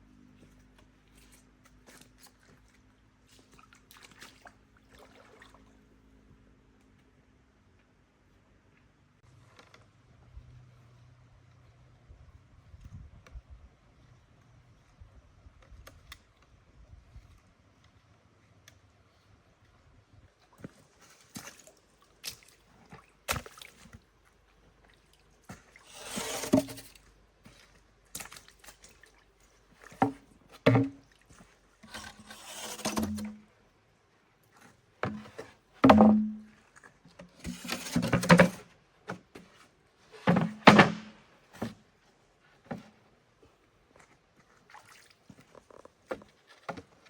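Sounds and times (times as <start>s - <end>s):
scraping sounds: 25.8s - 27.0s, 31.8s - 33.4s, 37.4s - 38.6s
knocks of objects handled: 35.0s - 36.5s, 40.2s - 41.7s.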